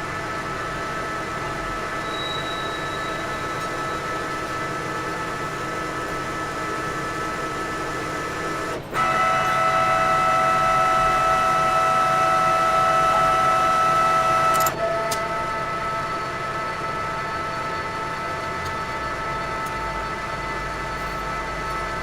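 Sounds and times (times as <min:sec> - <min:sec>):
metal lathe whining: 0:08.5 - 0:21.8.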